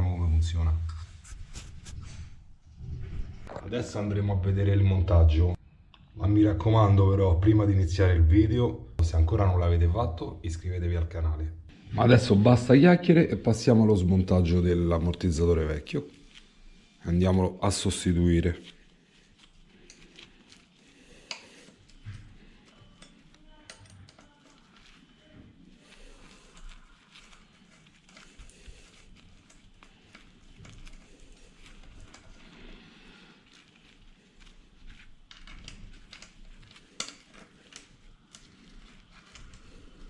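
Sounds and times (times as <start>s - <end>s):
hand tools clicking and tapping: 21.2s - 24.9s, 35.3s - 39.6s.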